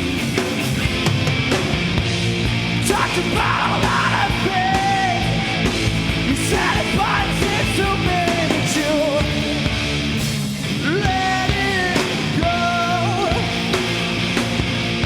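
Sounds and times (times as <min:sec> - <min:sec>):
live rock band playing: 0:00.0 - 0:15.0
person singing: 0:02.8 - 0:05.4, 0:06.3 - 0:09.6, 0:10.8 - 0:13.7.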